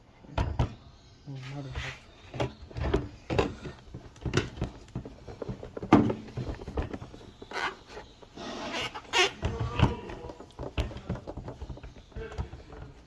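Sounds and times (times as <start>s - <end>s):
irregular clicks and knocks: 9.2s - 13.0s.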